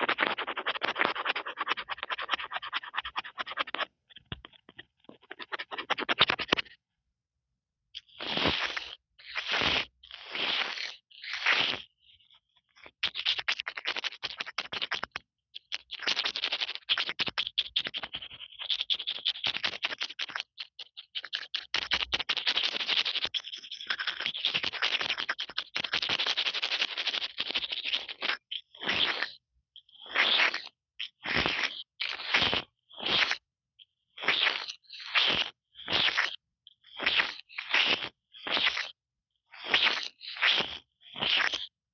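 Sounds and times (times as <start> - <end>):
fingertips tapping on microphone: 0.8 - 6.7.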